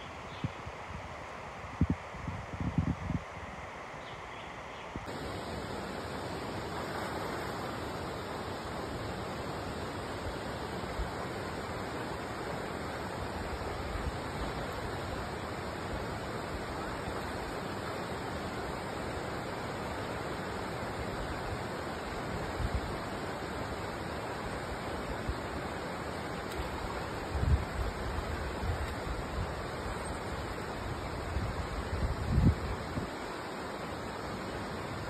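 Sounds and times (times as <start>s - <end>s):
wind thumps on microphone: 1.7s - 3.3s
rushing water: 3.2s - 35.0s.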